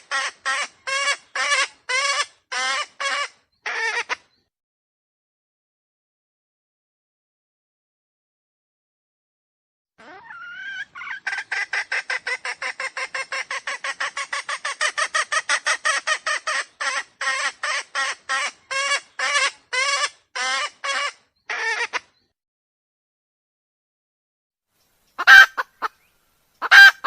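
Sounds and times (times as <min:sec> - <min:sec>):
junglefowl cackling calls: 0:00.0 - 0:04.2, 0:10.0 - 0:22.1, 0:25.2 - 0:26.0, 0:26.6 - 0:27.0.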